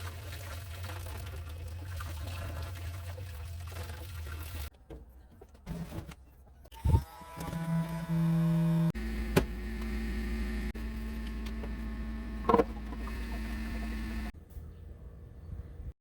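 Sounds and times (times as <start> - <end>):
small electric motor humming: 6.8 - 14.3.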